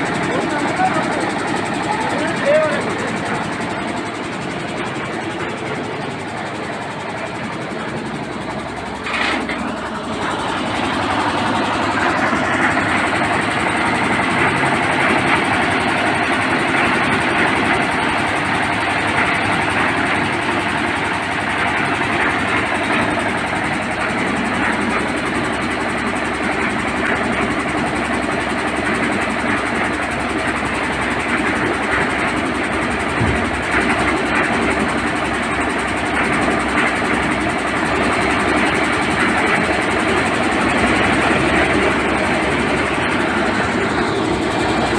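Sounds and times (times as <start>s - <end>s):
diesel engine running: 0.0s - 44.9s
knock: 33.2s - 33.6s.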